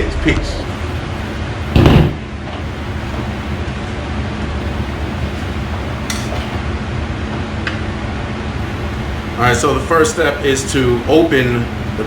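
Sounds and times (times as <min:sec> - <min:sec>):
low room hum: 0:00.0 - 0:03.7, 0:04.6 - 0:06.6, 0:08.5 - 0:12.0
loud thump: 0:01.7 - 0:02.2.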